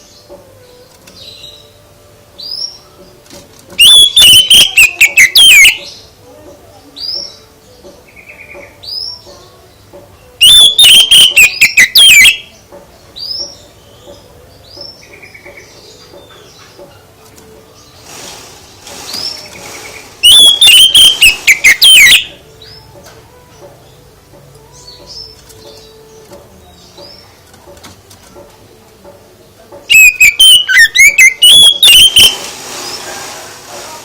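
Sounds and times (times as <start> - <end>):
songbird singing: 0.0 - 33.3
bird chirps and calls: 3.8 - 6.2, 6.8 - 17.1, 19.0 - 24.0, 29.8 - 33.3.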